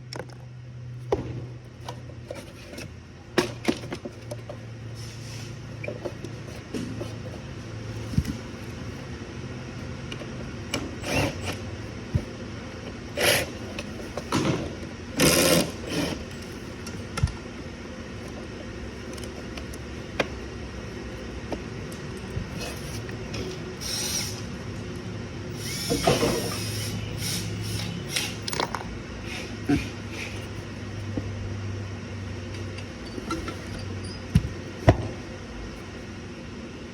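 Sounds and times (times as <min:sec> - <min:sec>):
steady shop hum: 0:00.0 - 0:36.9
power tool whirring: 0:10.7 - 0:11.7, 0:13.1 - 0:13.9, 0:15.2 - 0:16.5, 0:23.8 - 0:24.5, 0:25.5 - 0:28.6.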